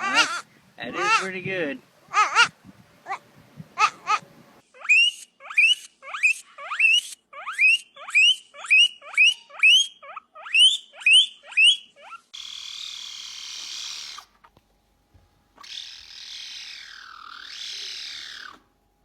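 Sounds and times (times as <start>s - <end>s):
animal squeaking calls: 0.0s - 1.3s, 2.1s - 3.2s, 3.8s - 14.5s, 15.6s - 18.6s
animal hissing: 12.1s - 14.4s, 15.6s - 18.6s.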